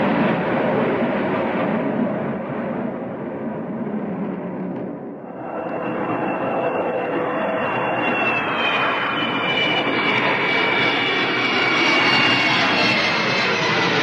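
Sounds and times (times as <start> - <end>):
jet engine high whine: 0.0 - 14.0
cabin air roar: 3.6 - 7.4.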